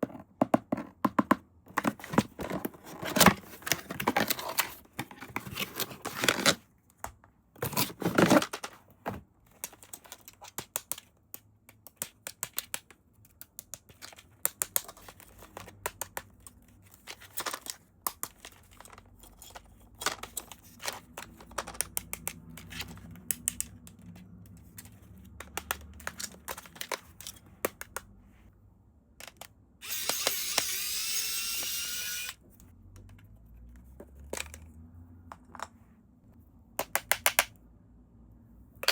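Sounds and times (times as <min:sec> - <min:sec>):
small clicks and taps: 0:21.1 - 0:28.1.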